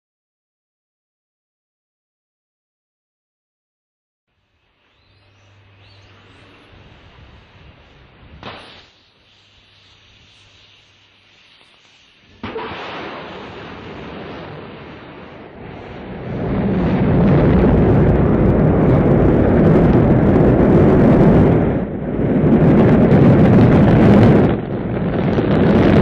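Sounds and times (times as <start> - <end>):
rocket launch roar: 6.4 - 9.8, 10.4 - 26.0.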